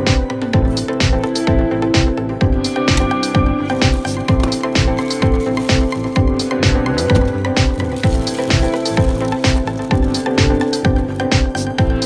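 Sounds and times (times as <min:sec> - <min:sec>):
kick drum beat: 0:00.0 - 0:12.0.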